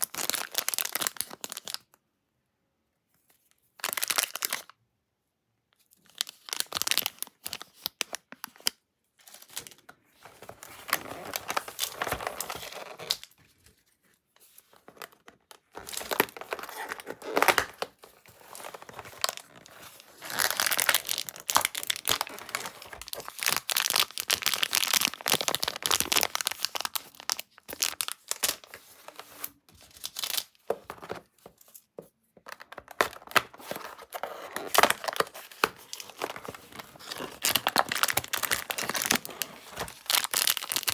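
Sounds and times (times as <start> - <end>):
packaging torn and crinkled: 0.0 - 1.8, 3.8 - 4.7, 6.1 - 8.7, 10.4 - 13.4, 14.7 - 29.2, 29.8 - 31.2, 32.6 - 40.9.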